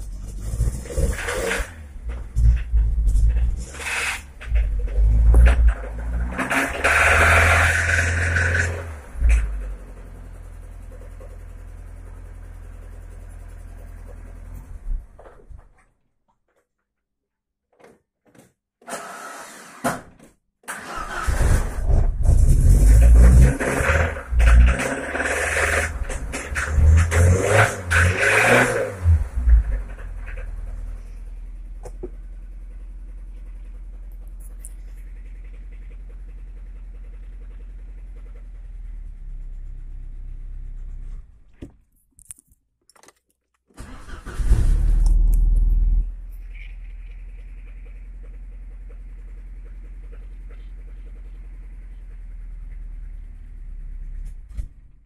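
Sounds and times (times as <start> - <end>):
car engine revving: 0.0 - 10.8, 20.8 - 31.3, 43.8 - 51.7
engine knocking: 29.5 - 39.6, 46.5 - 54.3
car engine knocking at idle: 46.9 - 53.3.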